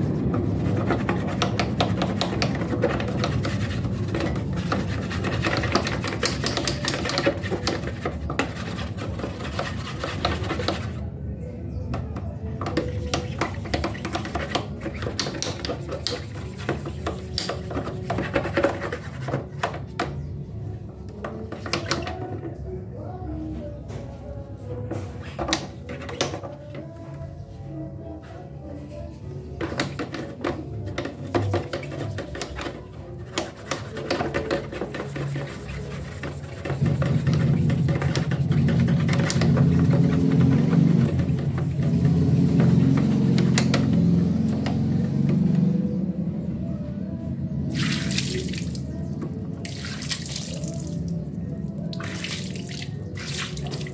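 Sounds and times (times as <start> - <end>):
rasping strokes on cage: 31.4 - 44.9.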